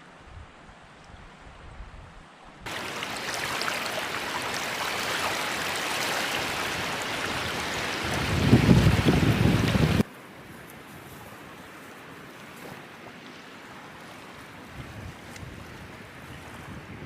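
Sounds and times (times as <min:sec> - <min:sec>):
water rushing: 0:02.7 - 0:10.1.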